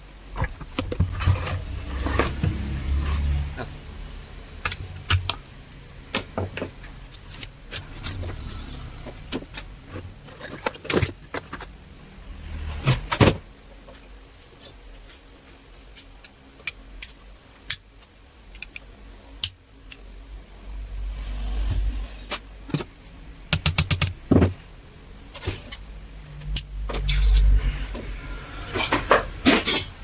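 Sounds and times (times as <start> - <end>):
metallic tool clicks and clinks: 7.2 - 9.1.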